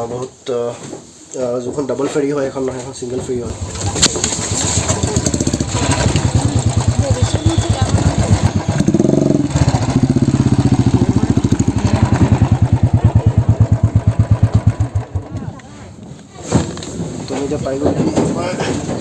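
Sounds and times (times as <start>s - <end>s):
motorcycle engine idling: 3.5s - 16.0s.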